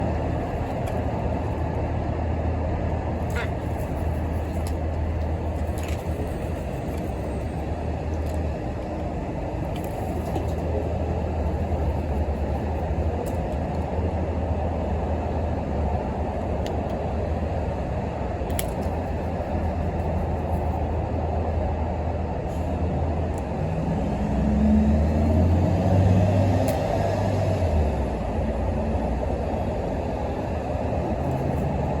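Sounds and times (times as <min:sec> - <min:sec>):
low traffic rumble: 0:00.0 - 0:32.0
heavy vehicle passing: 0:22.7 - 0:32.0.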